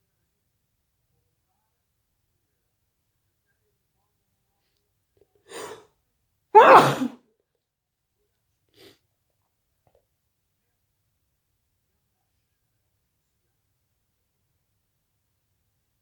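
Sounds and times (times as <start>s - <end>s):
person sneezing: 5.5s - 5.8s, 6.6s - 7.2s.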